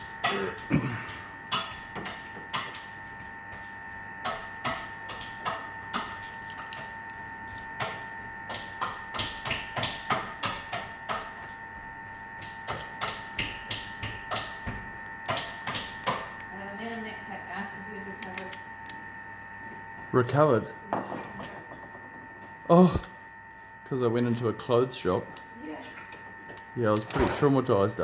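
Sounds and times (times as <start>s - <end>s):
metal lock parts clicking: 6.0s - 8.0s, 12.5s - 13.2s, 27.0s - 27.3s.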